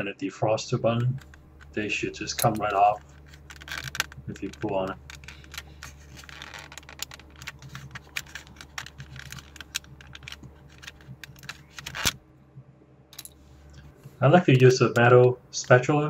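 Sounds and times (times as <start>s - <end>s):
plastic trim clicking and rattling: 0.9s - 12.2s.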